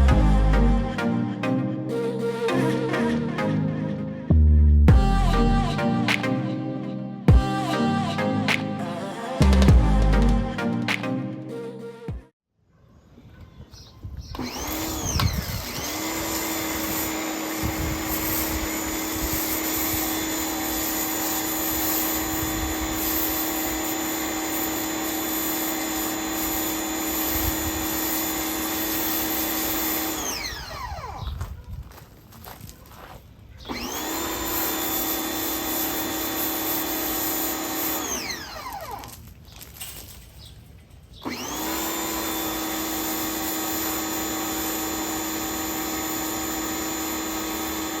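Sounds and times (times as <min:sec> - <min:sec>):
pressure washer motor whine: 0:14.3 - 0:31.4, 0:33.7 - 0:39.2, 0:41.2 - 0:48.0
water spraying: 0:15.8 - 0:30.2.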